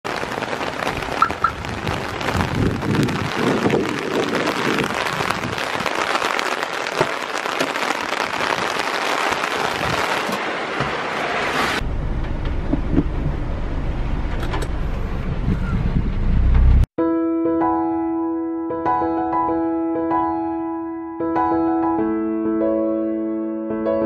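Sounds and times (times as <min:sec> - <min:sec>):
heavy rain pattering: 0:00.0 - 0:13.2
low rumble: 0:11.7 - 0:16.9.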